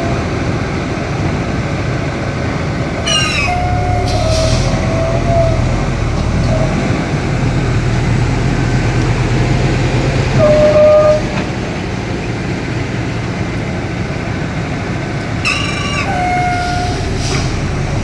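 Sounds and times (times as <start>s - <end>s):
excavator diesel engine rumbling: 0.0s - 18.0s
metallic squeals: 3.0s - 8.7s, 10.3s - 11.4s, 15.3s - 18.0s.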